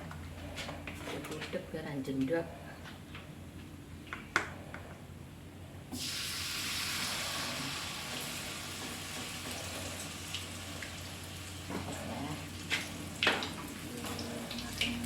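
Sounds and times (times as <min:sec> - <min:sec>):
hot oil sizzling: 0:05.9 - 0:15.0.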